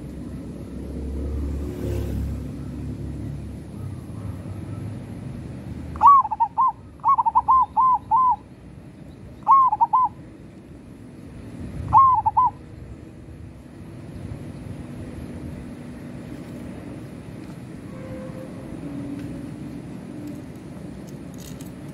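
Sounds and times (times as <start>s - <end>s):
dove cooing: 6.0s - 8.5s, 9.4s - 10.2s, 11.8s - 12.6s.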